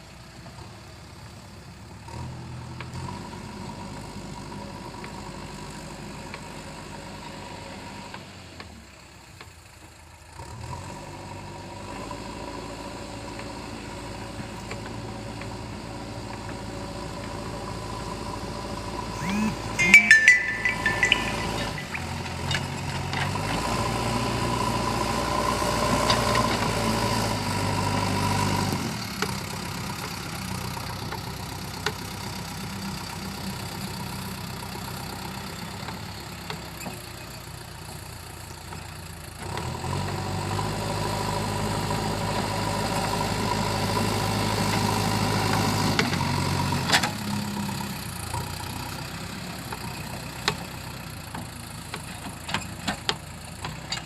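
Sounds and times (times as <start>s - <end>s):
diesel engine revving: 10.3s - 19.8s, 22.0s - 36.5s, 39.1s - 51.1s.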